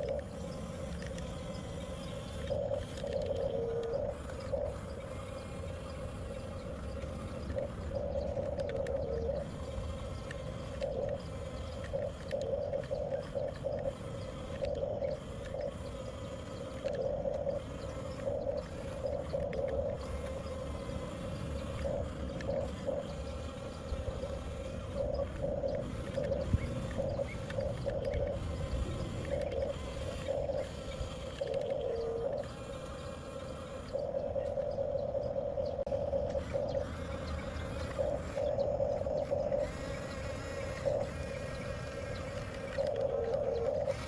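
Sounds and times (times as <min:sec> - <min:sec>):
toy bulldozer motors whining: 0:00.0 - 0:33.1, 0:36.2 - 0:44.0.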